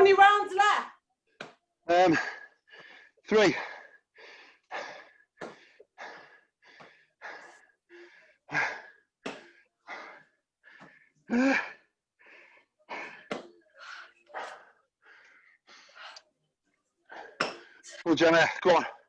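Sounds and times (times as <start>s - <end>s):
person panting hard: 2.0s - 16.3s.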